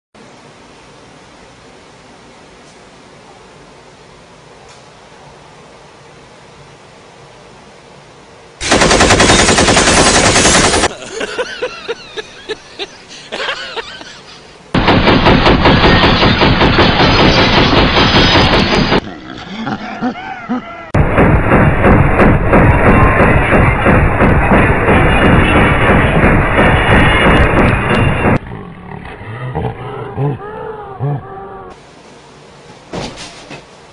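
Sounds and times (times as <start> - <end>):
rapid machine-gun-like rattling: 8.6 - 11.0, 14.8 - 19.0, 21.0 - 28.4.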